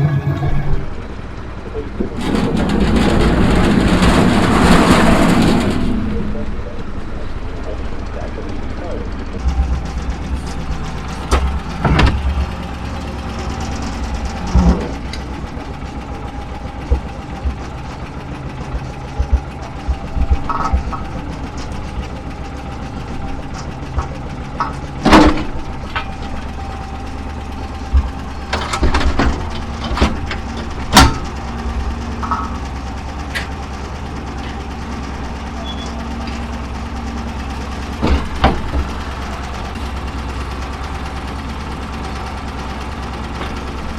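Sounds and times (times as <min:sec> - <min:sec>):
machinery engine humming: 0:00.0 - 0:43.9
sharp knocks and clatters: 0:01.7 - 0:06.9, 0:09.3 - 0:33.6, 0:37.4 - 0:40.5.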